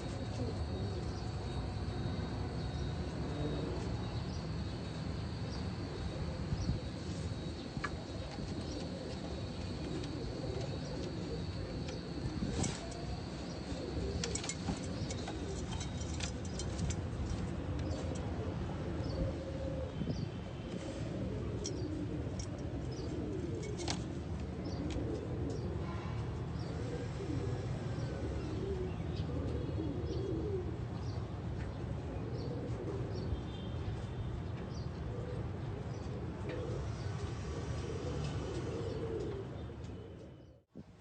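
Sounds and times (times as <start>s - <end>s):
pigeons cooing: 0.0s - 4.4s, 5.2s - 25.9s, 26.6s - 33.4s, 35.0s - 40.6s
sharp clicks and rustles: 14.1s - 18.2s.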